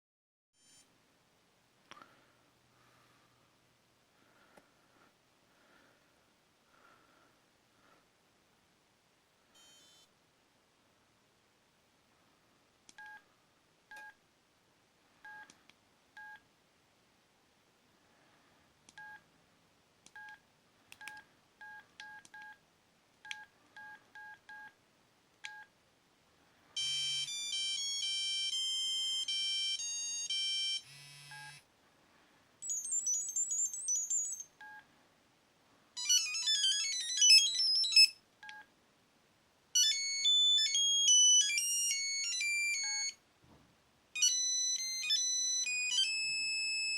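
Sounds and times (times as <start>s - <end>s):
electronic ringtone melody: 26.8s - 31.6s, 32.6s - 34.8s, 36.0s - 38.2s, 39.8s - 43.2s, 44.2s - 46.9s.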